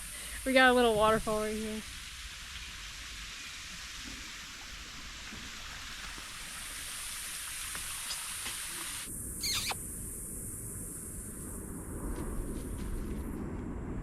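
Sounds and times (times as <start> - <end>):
small waterfall rushing: 0.0 - 9.1
short high chirp: 9.4 - 9.8.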